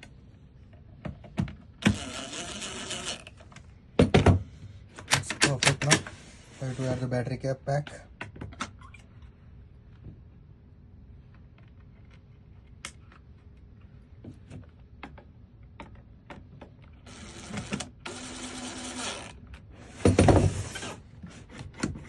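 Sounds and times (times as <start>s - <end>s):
small motor whirring: 1.8s - 3.4s, 17.1s - 19.4s.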